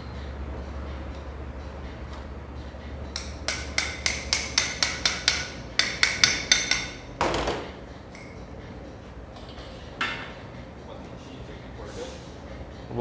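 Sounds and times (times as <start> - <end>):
hammer striking metal: 3.2 - 8.3.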